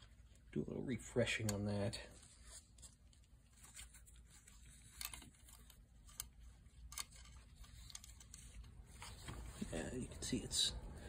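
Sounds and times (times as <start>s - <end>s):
low steady room hum: 0.0s - 11.0s
faint clicks of small parts: 1.2s - 9.3s
light rustles of handling: 1.2s - 10.5s.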